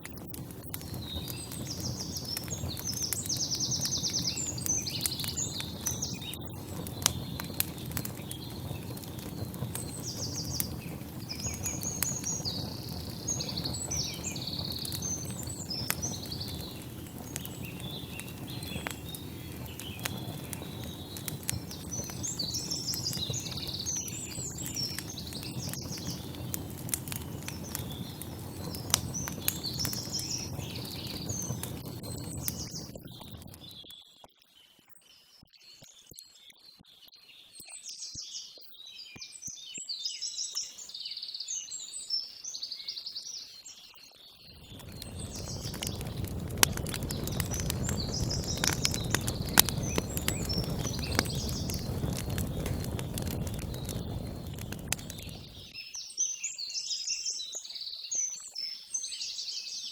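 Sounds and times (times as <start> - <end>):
small birds chirping and trilling: 0.0 - 59.9
low background rumble: 44.6 - 55.6.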